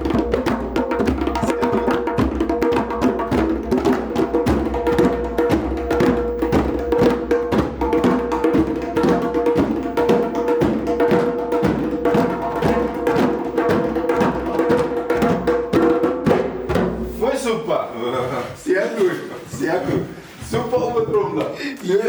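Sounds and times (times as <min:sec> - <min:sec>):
group of drums beating: 0:00.0 - 0:17.6.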